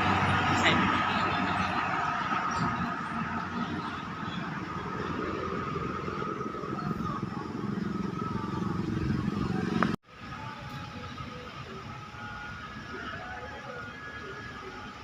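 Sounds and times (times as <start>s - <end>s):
motorcycle and car engines passing: 0.0s - 10.0s
road traffic noise: 0.0s - 15.0s.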